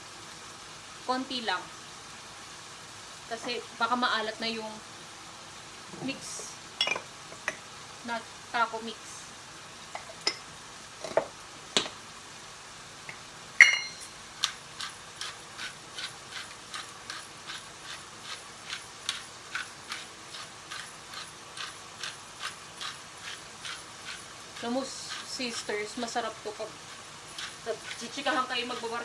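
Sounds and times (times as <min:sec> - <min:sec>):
light taps in frying pan: 0:11.1 - 0:12.0
utensil clicking in frying pan: 0:13.1 - 0:29.0
metallic clink: 0:13.6 - 0:24.6.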